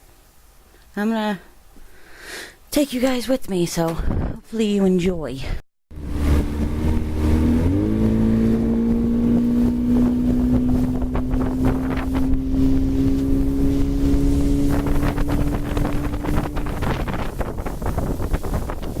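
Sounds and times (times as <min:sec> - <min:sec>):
motorboat engine running: 0:05.9 - 0:19.0
wind buffeting microphone: 0:06.0 - 0:19.0.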